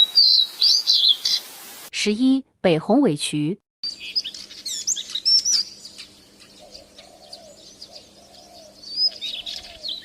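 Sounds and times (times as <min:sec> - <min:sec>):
bird singing high chirps: 0:00.0 - 0:01.4, 0:03.8 - 0:10.0.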